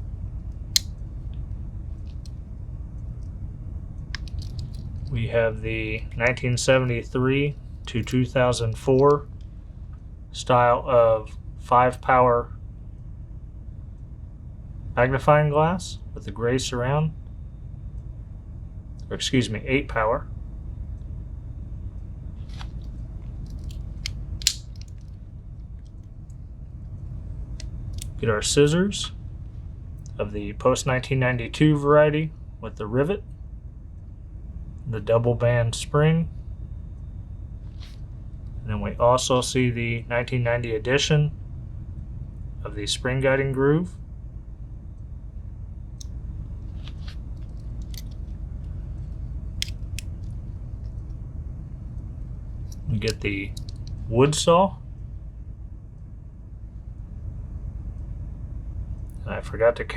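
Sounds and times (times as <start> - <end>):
low background hum: 0.0 - 59.9
pocket knife tools clicking: 4.2 - 4.8, 23.5 - 25.0, 52.7 - 54.0.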